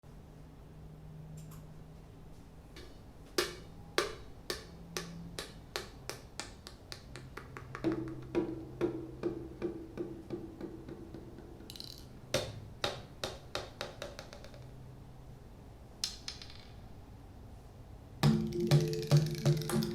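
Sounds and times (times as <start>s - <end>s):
percussive beat of sharp clicks: 3.4s - 11.8s, 18.2s - 19.9s.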